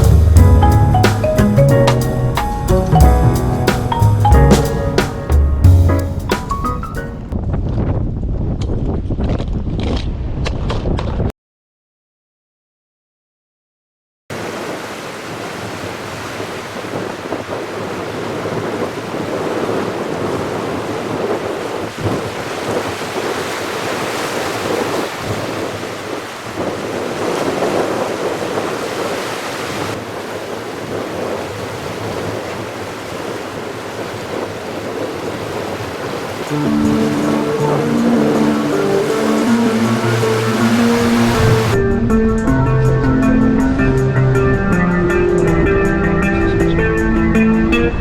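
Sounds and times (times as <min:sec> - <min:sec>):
surf washing: 0:00.0 - 0:07.3, 0:14.3 - 0:42.2
wind buffeting microphone: 0:00.0 - 0:11.3, 0:14.4 - 0:48.0.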